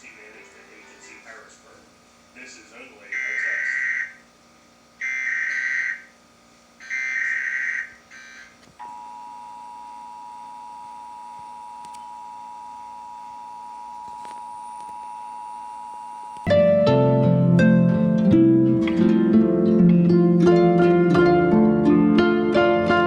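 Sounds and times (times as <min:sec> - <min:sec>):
screechy digital data bursts: 0:03.1 - 0:04.2, 0:05.0 - 0:06.1, 0:06.8 - 0:08.6.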